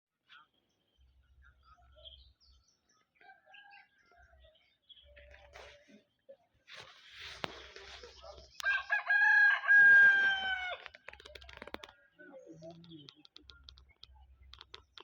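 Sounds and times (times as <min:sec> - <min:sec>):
rooster crowing: 0:08.6 - 0:10.8
faint clicks and knocks: 0:10.8 - 0:12.0, 0:12.6 - 0:15.0.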